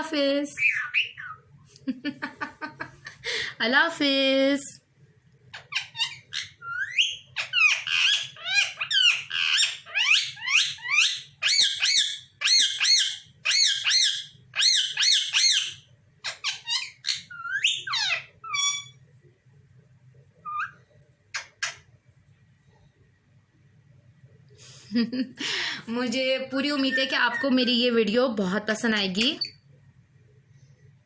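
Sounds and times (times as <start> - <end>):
parrots squawking: 0.6 - 1.4, 5.5 - 19.0, 20.4 - 21.9, 26.6 - 27.8.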